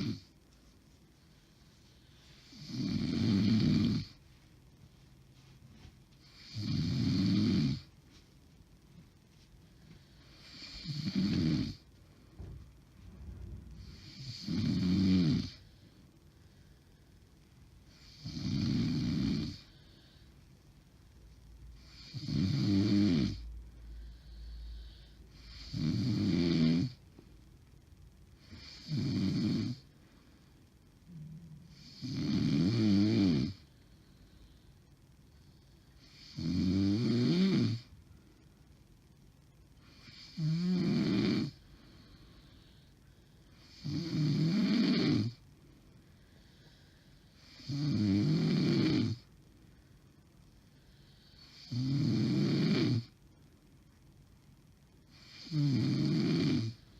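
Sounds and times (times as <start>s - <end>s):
woman snoring heavily: 0.0s - 0.3s, 2.4s - 4.2s, 6.3s - 7.9s, 10.4s - 11.8s, 13.8s - 15.7s, 17.9s - 20.1s, 21.8s - 23.4s, 24.1s - 27.0s, 28.4s - 29.8s, 31.1s - 33.6s, 36.0s - 37.9s, 39.9s - 41.6s, 43.6s - 45.4s, 47.3s - 49.2s, 51.1s - 53.1s, 55.1s - 56.8s
quiet breathing: 0.0s - 22.4s, 23.3s - 26.2s, 29.7s - 32.5s, 33.3s - 36.5s, 37.6s - 47.8s, 48.5s - 51.8s.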